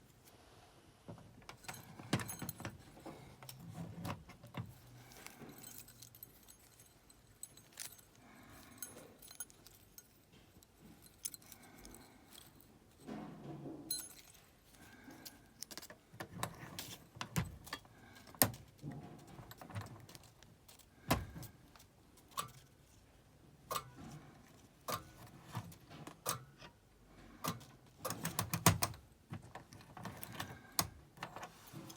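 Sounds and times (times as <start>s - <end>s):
small metal objects clinking: 4.7s - 13.2s, 13.8s - 16.0s.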